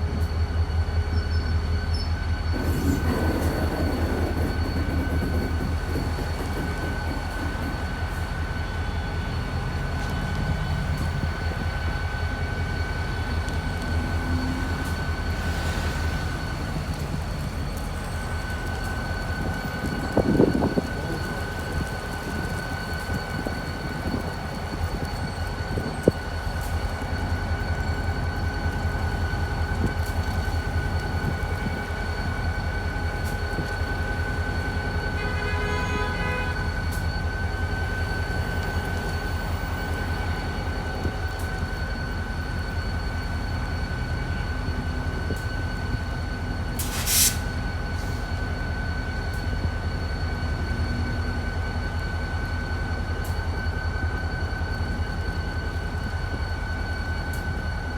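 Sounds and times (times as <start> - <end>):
diesel locomotive engine rumble: 0.0 - 57.9
short hiss: 46.8 - 48.2.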